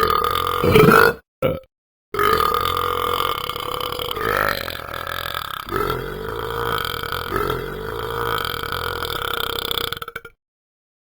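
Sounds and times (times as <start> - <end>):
dog burping: 0.0 - 10.4.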